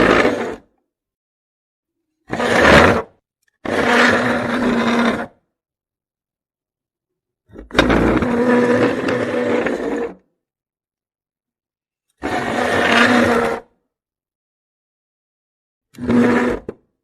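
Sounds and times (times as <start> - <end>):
chair dragged across floor: 0.0 - 0.7, 2.2 - 5.4, 7.5 - 10.2, 12.2 - 13.7, 16.0 - 16.8.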